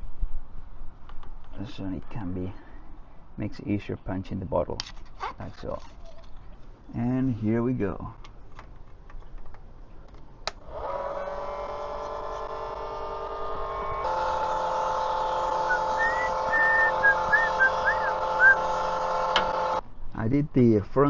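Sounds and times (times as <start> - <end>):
electric pump whining: 10.6 - 19.8.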